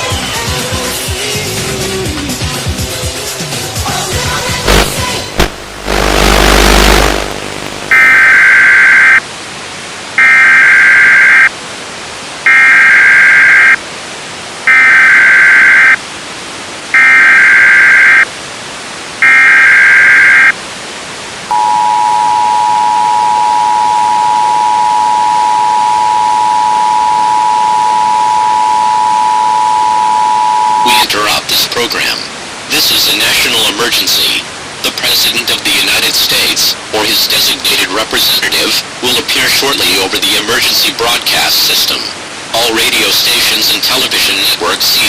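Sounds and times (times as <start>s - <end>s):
broadcast hiss: 0.0s - 45.0s
burst of static: 4.4s - 9.3s, 14.7s - 16.0s, 17.0s - 18.3s, 19.2s - 20.6s, 23.8s - 45.0s
two-tone attention signal: 7.9s - 9.2s, 14.7s - 16.0s, 17.0s - 18.2s, 19.2s - 20.5s, 21.5s - 31.1s
electronic beeps: 19.2s - 20.5s, 21.5s - 31.1s.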